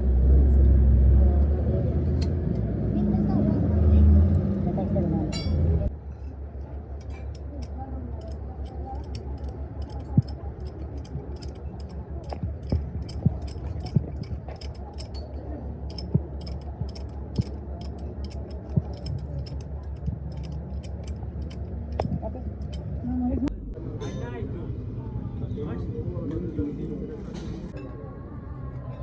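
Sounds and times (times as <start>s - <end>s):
metal clinking and knocking: 2.0s - 2.4s, 4.3s - 23.2s.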